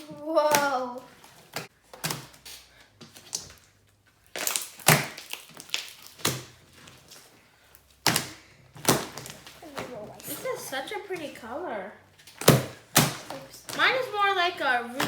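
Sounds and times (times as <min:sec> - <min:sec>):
air pockets popping: 0:08.0 - 0:10.6.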